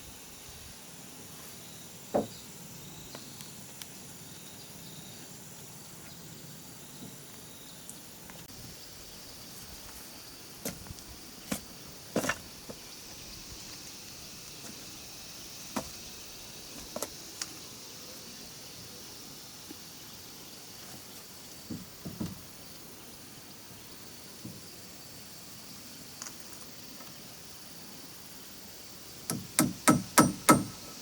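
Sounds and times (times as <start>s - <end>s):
sharp knocks and taps: 29.3s - 30.7s.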